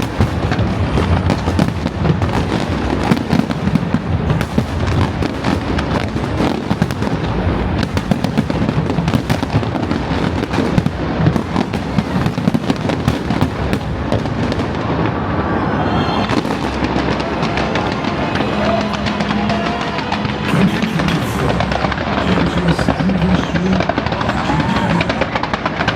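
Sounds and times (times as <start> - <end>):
fireworks banging and crackling: 0.0 - 25.9.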